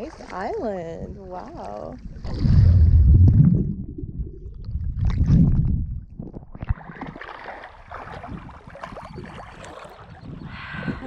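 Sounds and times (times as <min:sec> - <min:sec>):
sea water splashing: 0:00.0 - 0:11.0.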